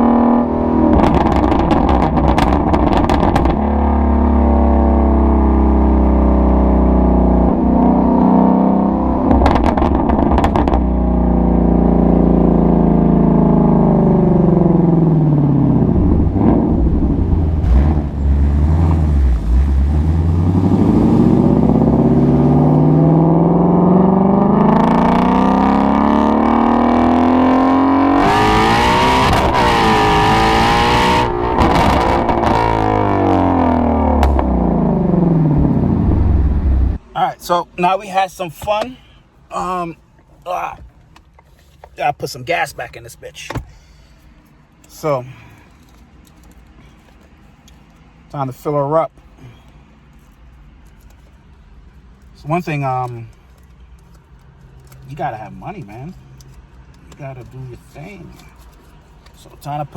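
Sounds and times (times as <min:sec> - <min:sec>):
car engine exhaust: 0:00.0 - 0:42.4.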